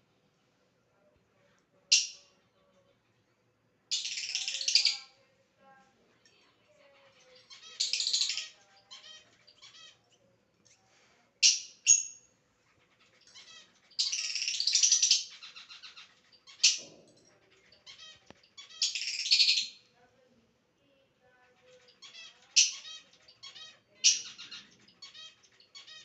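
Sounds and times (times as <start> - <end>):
lovebird chirping and chattering: 1.9 - 2.4, 3.9 - 5.2, 6.8 - 20.0, 21.4 - 26.0.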